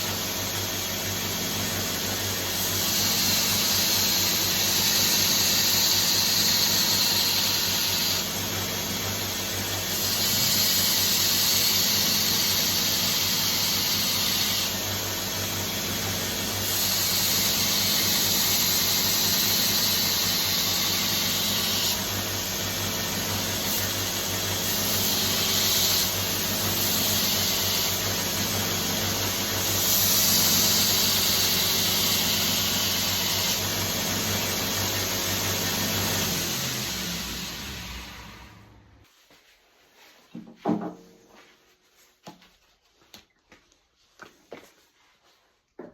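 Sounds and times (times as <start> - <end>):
blade grinding hiss: 2.4 - 8.5, 9.4 - 15.4, 16.3 - 33.8
belt grinder motor hum: 2.4 - 38.9.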